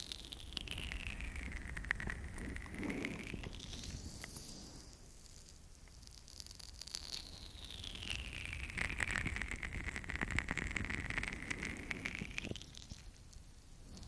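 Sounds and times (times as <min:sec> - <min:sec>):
oiled fingers rubbing microphone: 0:00.8 - 0:04.9, 0:08.0 - 0:13.2.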